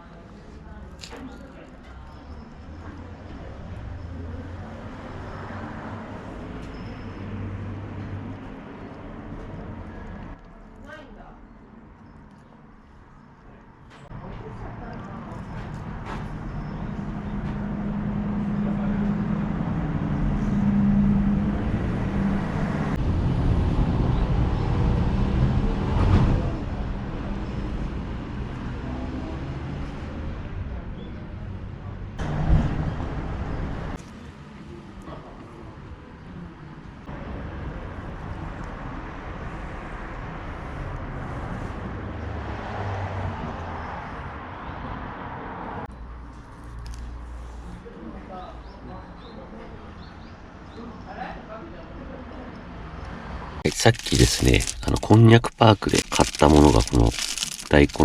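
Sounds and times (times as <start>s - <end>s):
road noise: 0.0s - 58.0s.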